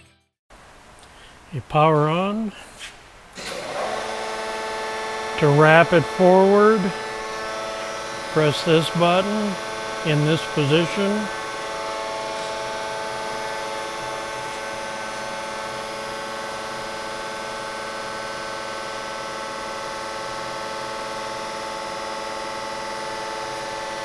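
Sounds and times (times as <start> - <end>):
hydraulic pump and motor humming: 0.6 - 24.0.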